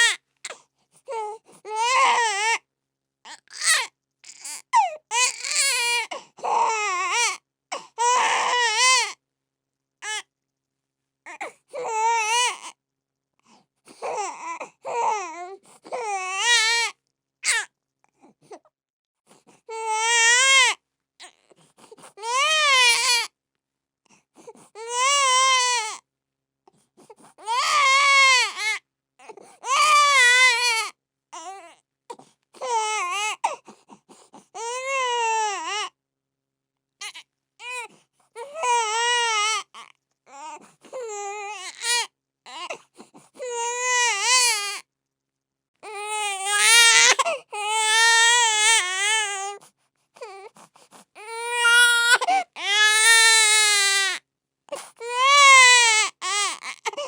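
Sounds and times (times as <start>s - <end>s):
baby crying: 1.1s - 2.6s, 3.3s - 9.2s, 11.3s - 12.7s, 14.0s - 17.7s, 19.7s - 20.8s, 22.2s - 23.3s, 24.8s - 26.0s, 27.4s - 31.8s, 32.6s - 33.6s, 34.6s - 35.9s, 37.0s - 42.8s, 43.4s - 44.8s, 45.8s - 49.6s, 51.2s - 57.0s.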